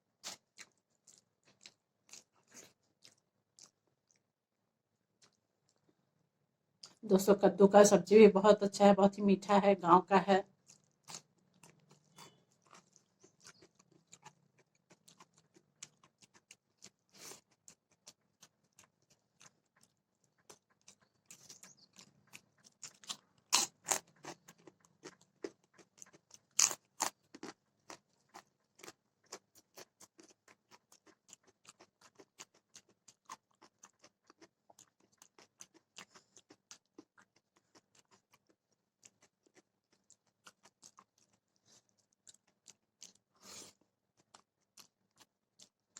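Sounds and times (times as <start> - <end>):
person chewing and crunching food: 0.0 - 4.4, 5.0 - 6.0, 6.8 - 7.0, 10.4 - 45.9.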